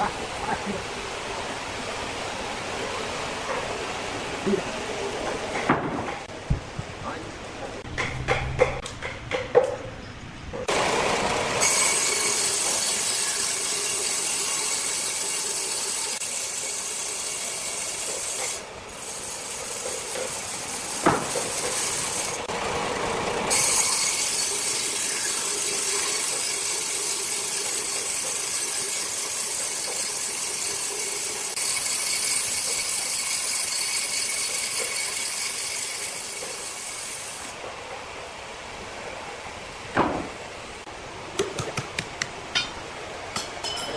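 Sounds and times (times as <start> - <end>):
circular saw cutting wood: 10.7 - 37.6.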